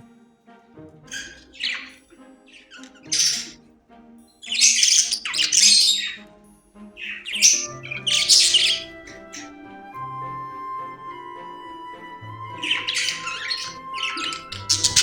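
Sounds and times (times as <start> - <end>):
soft background music: 0.0 - 15.0
budgerigars squawking: 1.1 - 3.6, 4.4 - 6.3, 6.9 - 10.0, 11.2 - 15.0.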